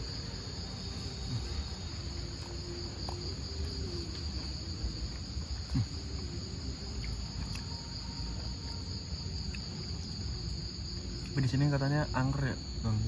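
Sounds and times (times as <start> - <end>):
night insects droning: 0.0 - 13.0.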